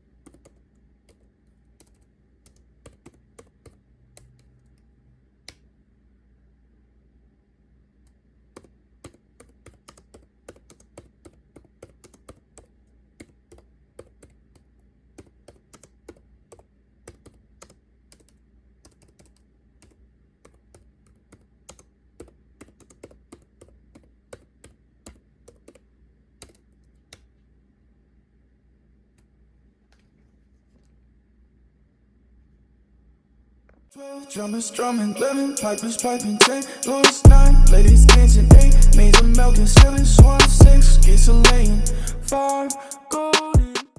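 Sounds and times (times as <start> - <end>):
computer keyboard typing: 0.1 - 4.8, 8.0 - 27.4, 35.6 - 43.9.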